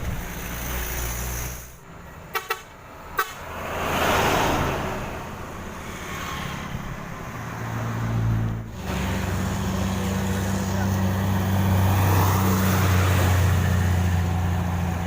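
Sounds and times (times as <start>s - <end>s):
truck passing by: 0.0s - 15.0s
truck horn toots: 2.3s - 3.5s.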